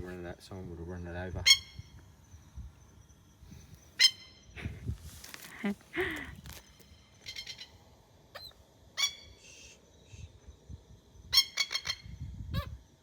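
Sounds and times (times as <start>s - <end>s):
birds calling harshly: 1.2s - 2.5s, 3.4s - 9.9s, 11.2s - 12.8s.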